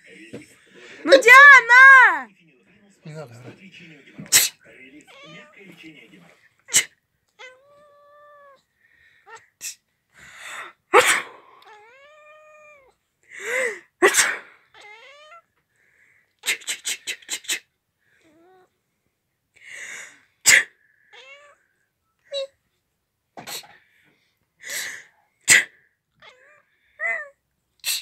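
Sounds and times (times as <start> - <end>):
person sneezing loudly: 4.2 - 4.6, 6.7 - 7.0, 10.9 - 11.6, 13.4 - 14.6, 20.4 - 20.8, 24.7 - 25.8
cat meowing: 5.1 - 5.6, 6.7 - 8.6, 11.3 - 13.0, 14.7 - 15.5, 18.2 - 18.7, 21.1 - 21.6, 26.2 - 27.3.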